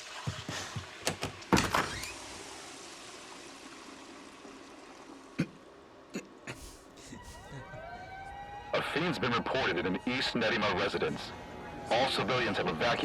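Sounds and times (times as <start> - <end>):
toilet flushing: 0.0 - 6.0.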